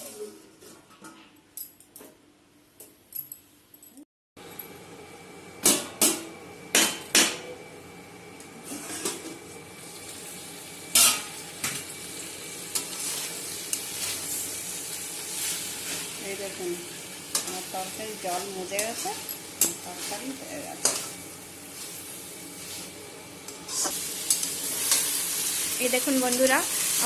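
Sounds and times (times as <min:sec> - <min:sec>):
food sizzling: 0:08.7 - 0:27.0.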